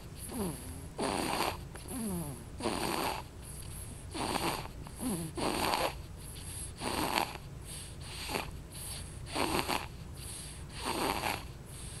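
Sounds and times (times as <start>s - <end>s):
baby snoring: 0.0s - 12.0s.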